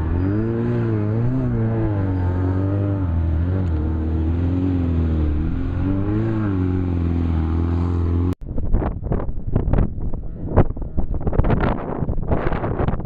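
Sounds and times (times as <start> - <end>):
off-road vehicle engine revving: 0.0 - 8.4
wind buffeting microphone: 0.0 - 13.0.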